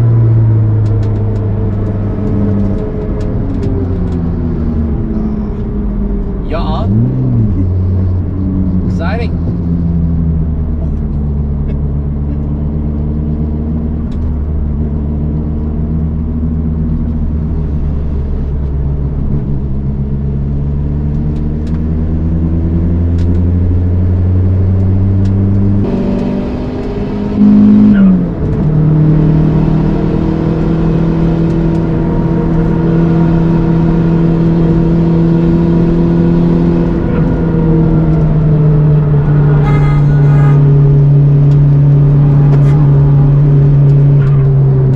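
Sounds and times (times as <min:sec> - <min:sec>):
turbocharged engine pulling hard: 0:10.6 - 0:44.9.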